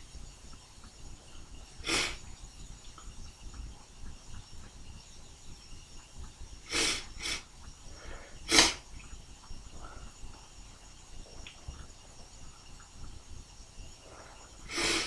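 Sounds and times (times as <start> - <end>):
person sneezing: 1.8 - 2.2, 8.5 - 8.8.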